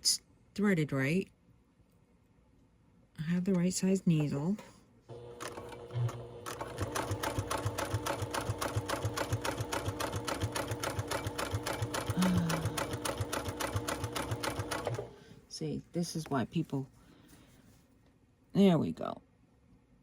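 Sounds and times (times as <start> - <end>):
sewing machine stitching: 5.1 - 15.2.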